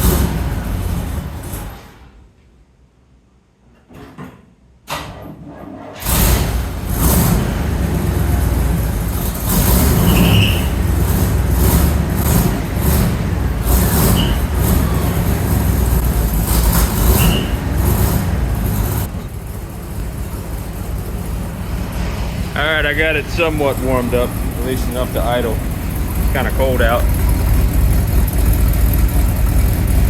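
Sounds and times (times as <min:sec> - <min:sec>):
truck engine running unevenly: 0:06.1 - 0:30.0.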